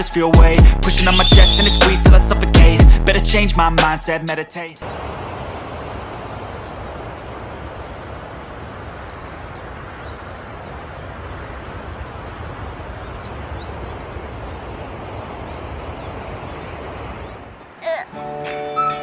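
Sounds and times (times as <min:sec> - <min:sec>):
faint bird chirps: 0:00.9 - 0:02.0.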